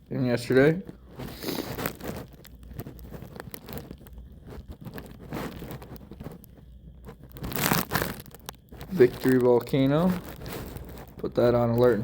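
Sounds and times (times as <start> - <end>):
rustling: 0.2 - 12.0.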